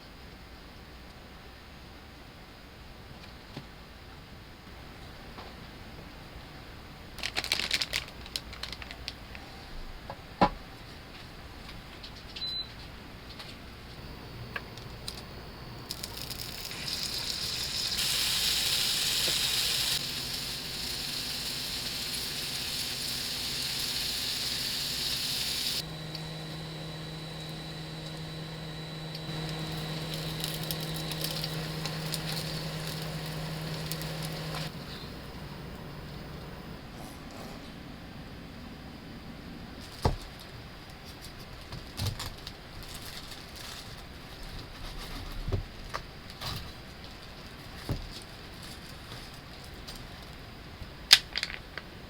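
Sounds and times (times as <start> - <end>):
steady low hum: 9.2 - 41.2
food sizzling in a frying pan: 15.9 - 34.7.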